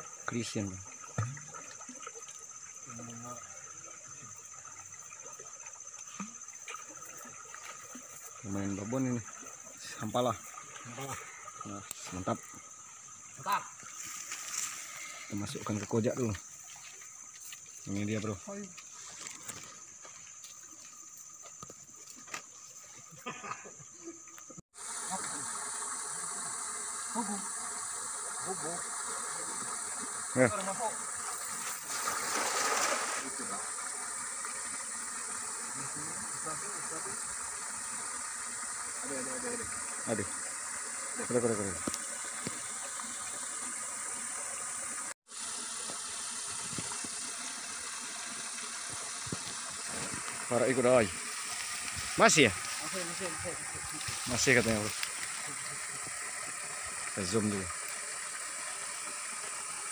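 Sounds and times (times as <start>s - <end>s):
insects buzzing: 0.0s - 59.9s
water splashing from handling: 30.5s - 33.7s.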